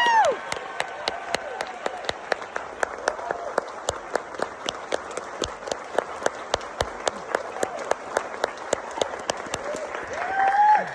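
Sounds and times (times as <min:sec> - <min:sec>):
cheering whoops: 0:00.0 - 0:00.5, 0:09.7 - 0:10.9
audience clapping: 0:00.0 - 0:10.9.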